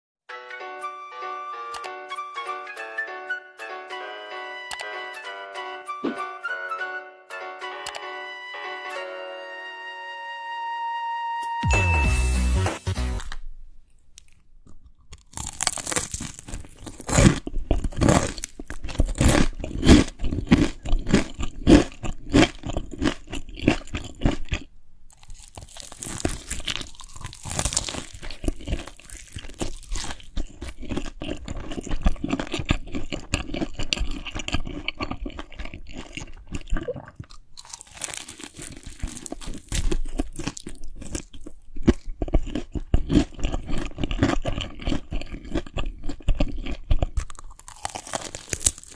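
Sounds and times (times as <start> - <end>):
person chewing crunchy food: 13.0 - 48.9.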